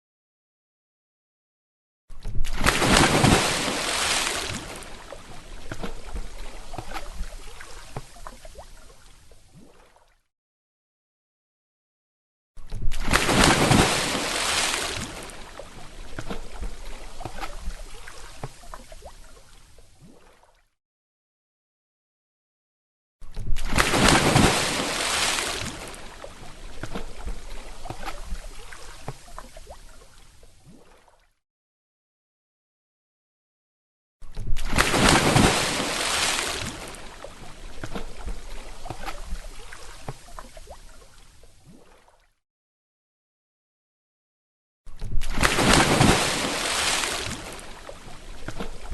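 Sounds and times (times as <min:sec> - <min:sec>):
water splash: 0:02.2 - 0:10.2, 0:12.7 - 0:20.6, 0:23.4 - 0:31.3, 0:34.4 - 0:42.3, 0:45.0 - 0:48.9
water drips and plops: 0:02.2 - 0:10.3, 0:12.6 - 0:20.8, 0:23.3 - 0:31.4, 0:34.5 - 0:42.4, 0:45.4 - 0:48.9
water sloshing: 0:02.4 - 0:10.1, 0:12.9 - 0:20.6, 0:23.5 - 0:31.2, 0:34.5 - 0:42.2, 0:45.3 - 0:48.9.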